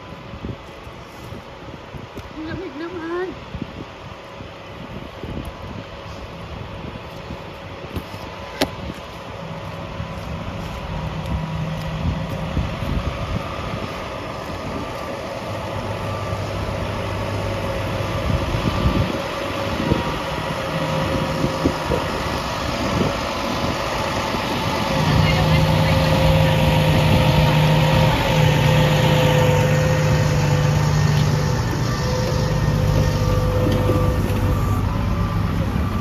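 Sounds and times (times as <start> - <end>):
vehicle engine running: 4.8 - 36.0.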